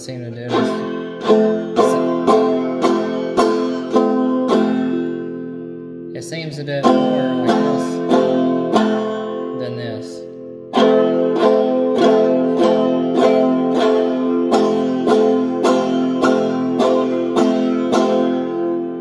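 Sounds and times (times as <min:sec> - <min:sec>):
banjo strumming: 0:00.0 - 0:19.0.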